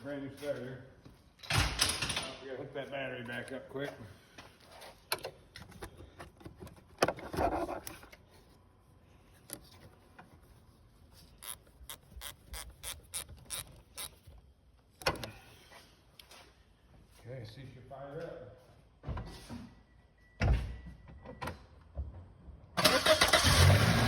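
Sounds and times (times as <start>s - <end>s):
ratchet clicking: 11.4s - 14.2s.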